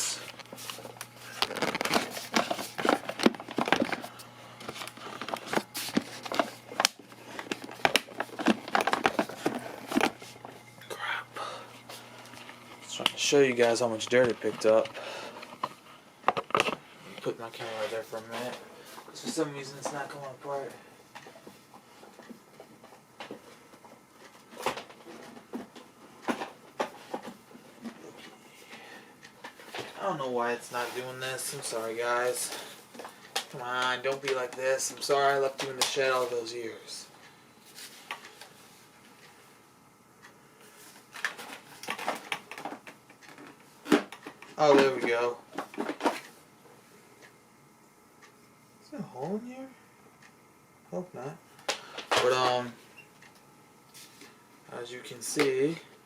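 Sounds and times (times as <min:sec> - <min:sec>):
plastic clicks and knocks: 0:15.5 - 0:16.8.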